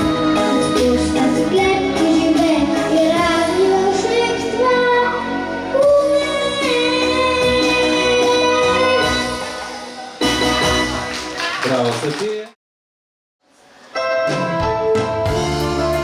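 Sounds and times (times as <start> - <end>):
instrumental backing track: 13.9 - 16.0.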